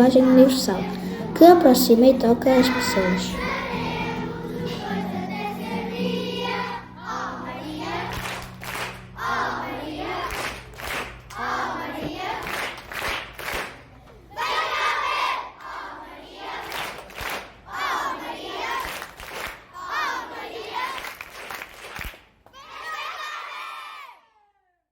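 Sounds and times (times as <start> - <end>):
children singing: 0.0 - 10.7, 11.4 - 12.8, 17.7 - 18.8, 19.8 - 21.0
low musical accompaniment: 0.0 - 12.3.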